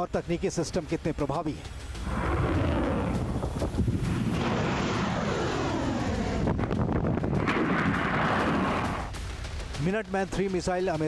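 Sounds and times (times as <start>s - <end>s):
rocket motor rumbling: 1.7s - 9.2s.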